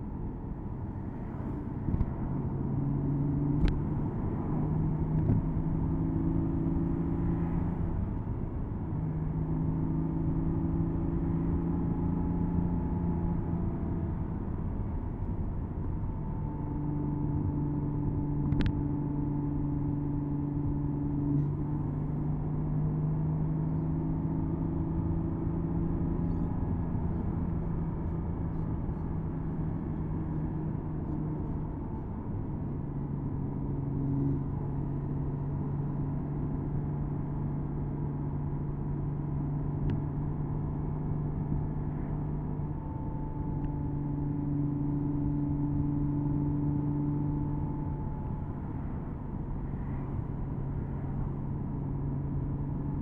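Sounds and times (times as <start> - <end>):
road and wind noise: 0.0 - 53.0
car engine humming: 24.0 - 53.0.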